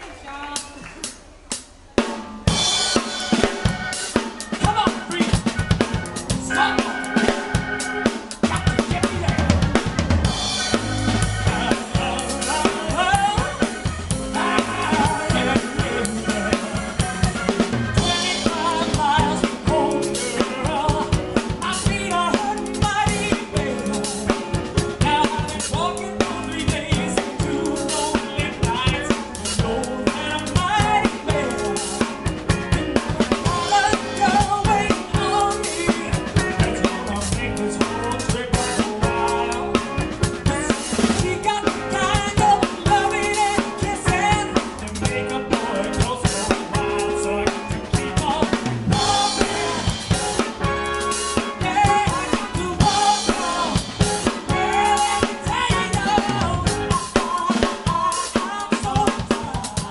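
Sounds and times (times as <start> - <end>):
band playing soul song: 0.0 - 59.9
drum kit beat: 0.6 - 59.9.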